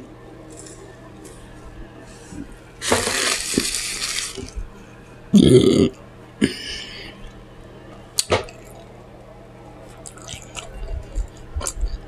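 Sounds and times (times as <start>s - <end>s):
woman burping: 5.3s - 6.6s.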